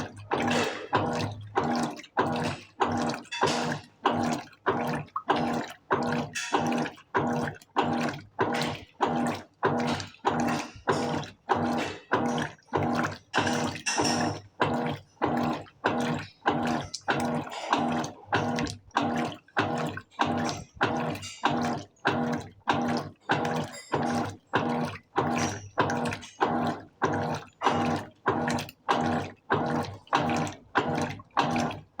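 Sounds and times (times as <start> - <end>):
washing machine motor humming: 0.0 - 32.0
water sloshing in tub: 0.0 - 32.0.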